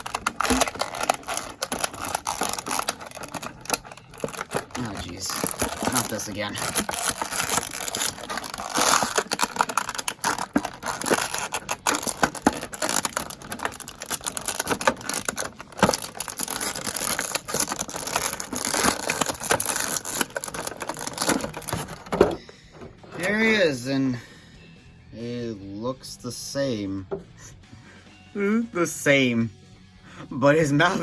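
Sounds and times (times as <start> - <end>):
toy packaging crinkling and tearing: 0.0 - 22.4.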